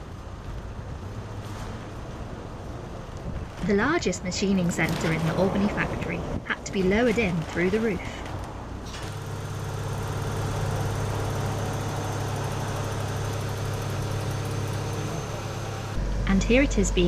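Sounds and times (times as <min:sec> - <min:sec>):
vehicle engine idling: 0:08.1 - 0:17.0.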